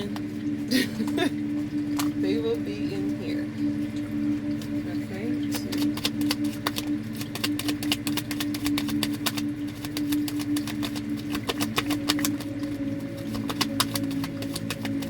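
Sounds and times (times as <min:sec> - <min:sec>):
low drone of sustained tones: 0:00.0 - 0:15.0
cards being shuffled: 0:05.5 - 0:15.0.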